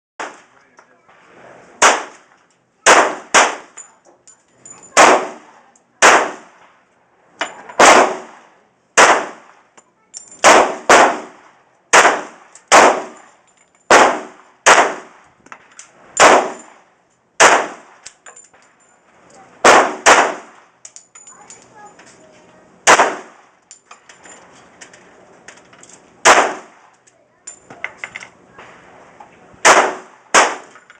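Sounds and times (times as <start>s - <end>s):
pistol shots with ringing tail: 1.8s - 2.2s, 2.8s - 3.8s, 4.9s - 6.6s, 7.8s - 8.4s, 9.0s - 9.5s, 10.4s - 13.3s, 13.9s - 15.2s, 16.2s - 16.8s, 17.4s - 18.0s, 19.6s - 20.6s, 22.8s - 23.4s, 26.2s - 26.8s, 29.6s - 30.8s.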